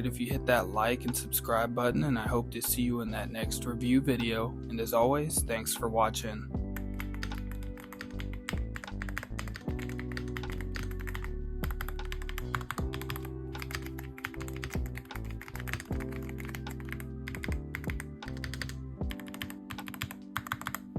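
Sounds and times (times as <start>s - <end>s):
background music with low notes: 0.0s - 20.9s
mechanical keyboard typing: 7.0s - 20.9s.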